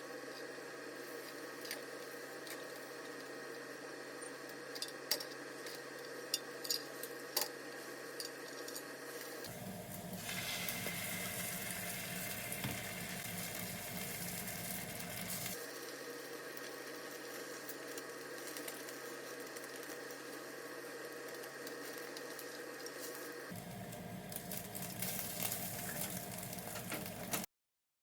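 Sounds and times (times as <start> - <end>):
food sizzling in a frying pan: 9.5 - 15.6, 23.5 - 27.5.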